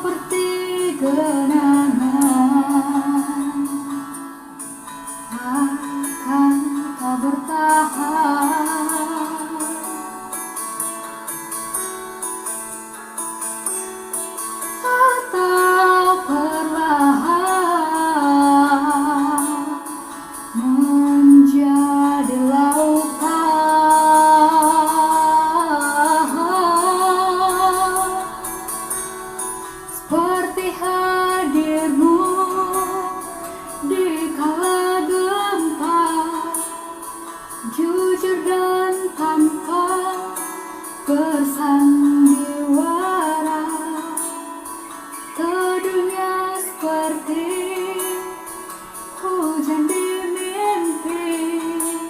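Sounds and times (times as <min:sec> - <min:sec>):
person singing with vibrato: 0:00.0 - 0:10.7, 0:14.8 - 0:52.0
acoustic guitar: 0:00.0 - 0:52.0.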